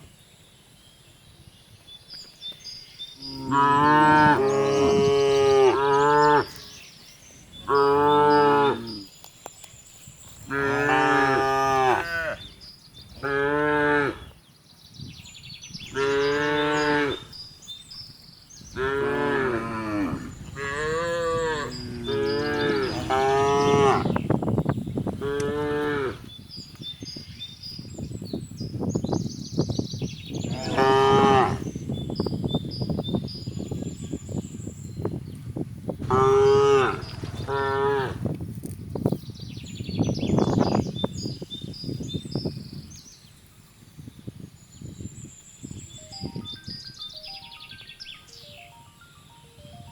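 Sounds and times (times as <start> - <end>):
cattle mooing: 36.0 - 38.2.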